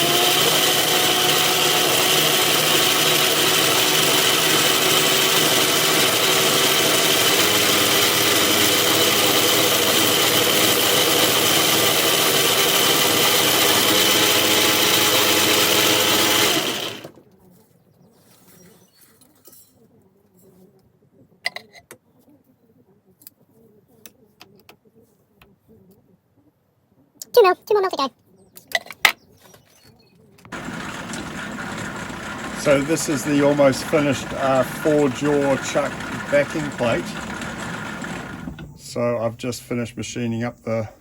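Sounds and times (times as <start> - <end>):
lathe running with high whine: 0.0 - 17.1, 30.5 - 40.0.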